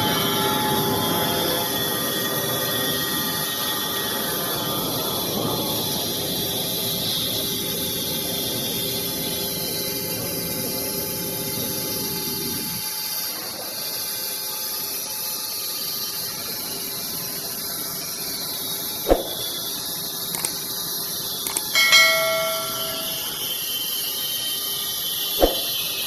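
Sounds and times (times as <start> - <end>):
sharp knock: 19.1 - 19.5, 21.5 - 23.2, 25.4 - 25.8
metallic clang: 20.4 - 20.6, 21.5 - 23.4, 25.4 - 25.8.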